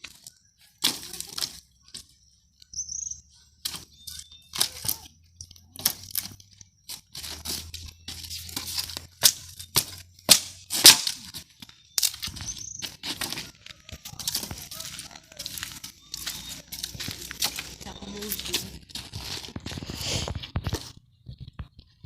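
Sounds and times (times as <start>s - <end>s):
bird chirping: 0.0s - 0.8s, 1.6s - 10.3s, 11.5s - 18.9s
dry sticks snapping: 0.0s - 2.0s, 3.6s - 19.5s.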